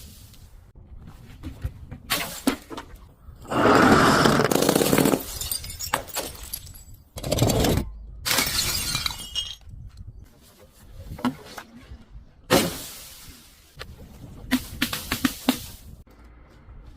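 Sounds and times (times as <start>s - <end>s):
glass bottle breaking: 4.9s - 7.0s, 8.3s - 9.7s.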